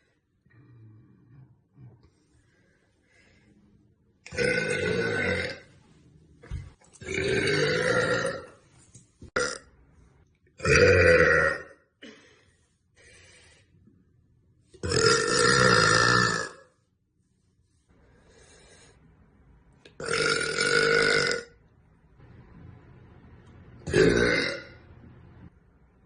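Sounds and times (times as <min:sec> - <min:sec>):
woman burping: 0:04.3 - 0:05.6, 0:14.8 - 0:16.6, 0:20.0 - 0:21.5, 0:23.8 - 0:24.8.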